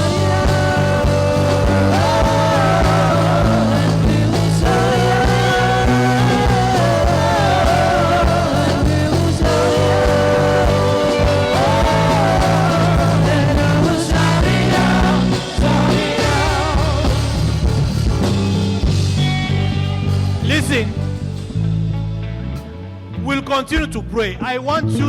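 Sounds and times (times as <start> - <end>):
person singing: 0.0 - 17.5
band with steady bass line: 0.0 - 25.0.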